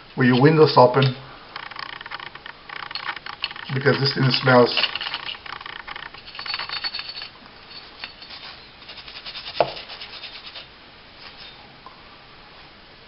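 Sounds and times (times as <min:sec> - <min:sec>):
brush scrubbing metal parts: 0:02.9 - 0:11.6.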